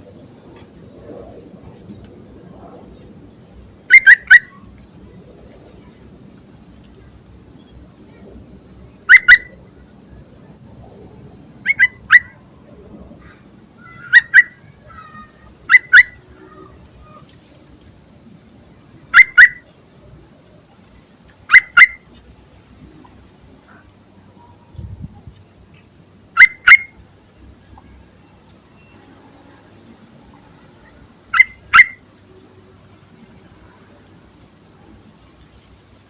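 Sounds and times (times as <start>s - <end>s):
bird giving sharp call notes: 3.9s - 4.5s.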